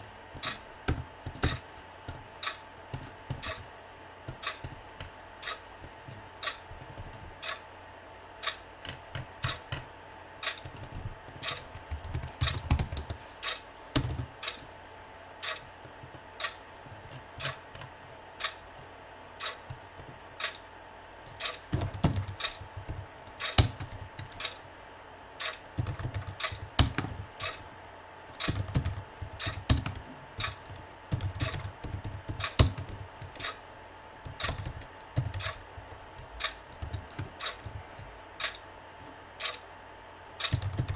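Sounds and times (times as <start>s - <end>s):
computer keyboard typing: 0.3s - 2.2s, 2.9s - 3.7s, 8.9s - 9.8s, 10.4s - 14.6s, 21.3s - 24.6s, 25.4s - 38.6s, 40.4s - 40.9s
clock ticking: 19.4s - 19.6s, 20.4s - 20.6s, 21.3s - 24.6s, 25.4s - 27.7s, 28.3s - 33.6s, 34.2s - 38.6s, 39.4s - 39.6s.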